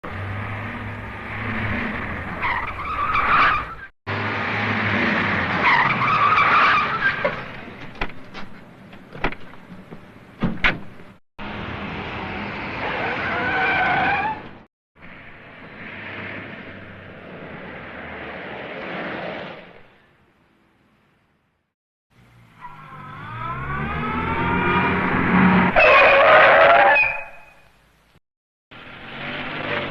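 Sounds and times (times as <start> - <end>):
tyres squealing: 2.3 - 3.9, 5.6 - 8.6, 12.8 - 14.6, 25.8 - 27.7.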